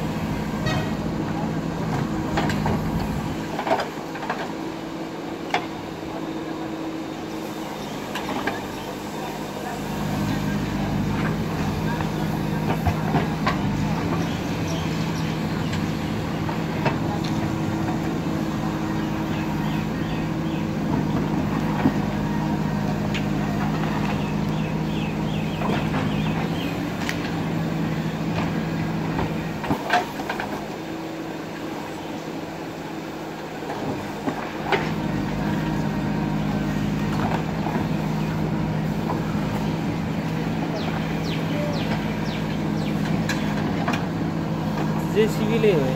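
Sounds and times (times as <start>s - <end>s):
digger diesel engine running: 0.0s - 45.9s.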